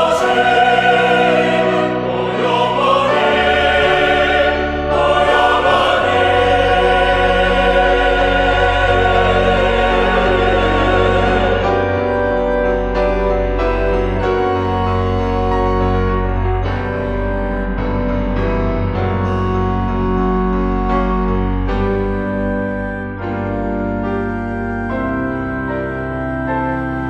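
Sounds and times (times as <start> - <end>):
mixed choir singing: 0.0 - 13.2
organ: 0.0 - 27.0
piano: 0.0 - 27.0.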